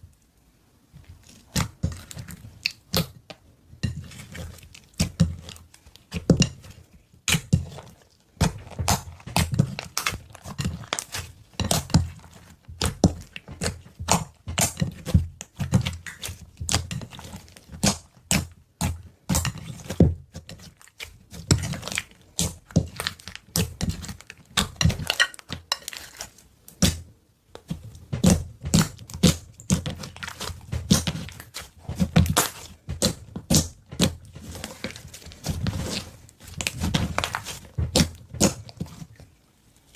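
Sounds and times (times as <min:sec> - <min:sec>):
slime popping and crackling: 0:08.4 - 0:19.8, 0:28.2 - 0:39.0.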